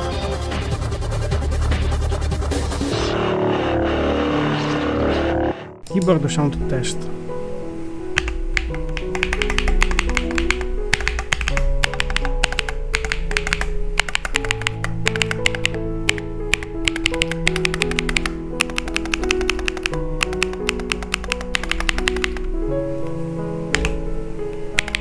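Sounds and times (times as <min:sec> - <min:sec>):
background music: 0:00.0 - 0:25.0
mechanical keyboard typing: 0:08.2 - 0:22.5, 0:23.7 - 0:24.0, 0:24.8 - 0:25.0.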